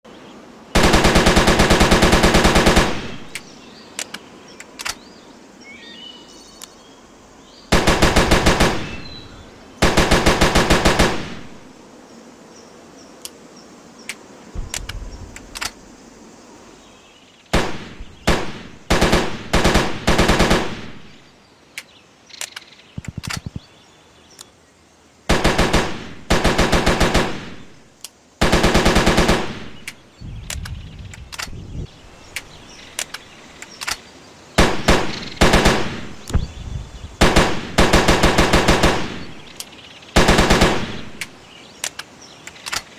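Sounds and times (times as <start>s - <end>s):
automatic rifle firing bursts: 0.8s - 3.4s, 7.7s - 11.6s, 17.6s - 21.2s, 25.3s - 27.8s, 28.4s - 30.0s, 34.6s - 36.2s, 37.2s - 39.5s, 40.2s - 41.3s
single sharp gunshot cracks: 14.6s - 15.8s, 17.6s - 21.0s.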